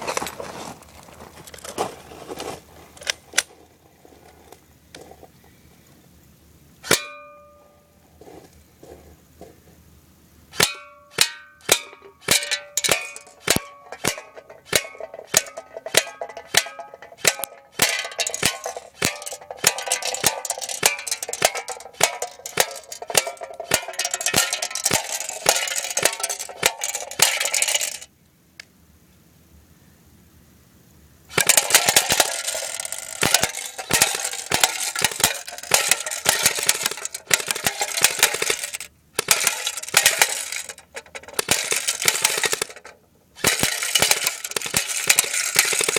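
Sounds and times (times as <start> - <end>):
bbs hitting a ringing metal can: 10.6 - 28.1, 31.3 - 45.9.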